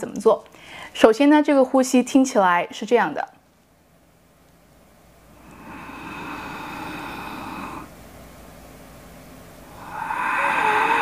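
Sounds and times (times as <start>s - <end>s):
hissing breath through throat: 5.4s - 7.9s, 9.7s - 11.0s.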